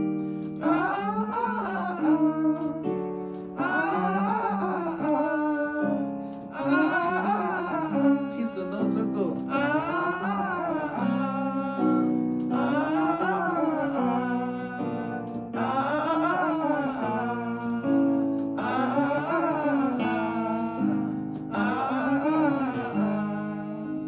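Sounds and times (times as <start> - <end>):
guitar accompaniment: 0.0 - 24.0
person singing vocal warm-up: 0.0 - 24.0.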